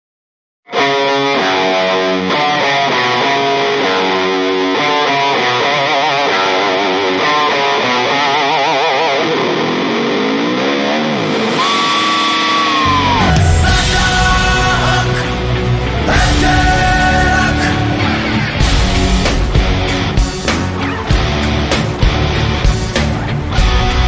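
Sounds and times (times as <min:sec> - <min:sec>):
electric guitar melody with vibrato: 0:00.7 - 0:24.0.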